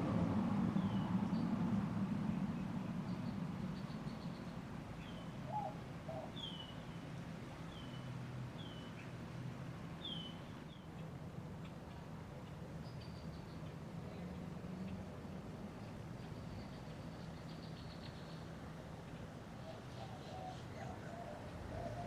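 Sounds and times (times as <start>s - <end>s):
bird chirping: 2.3s - 7.0s, 10.0s - 13.8s, 15.7s - 22.0s.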